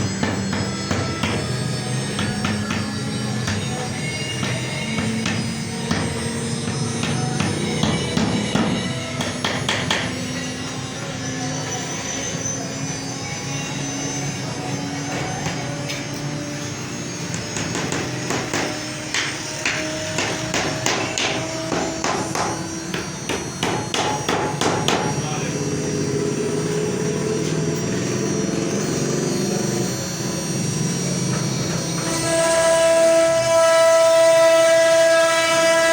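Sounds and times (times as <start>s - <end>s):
cnc router hum: 0.0s - 35.9s.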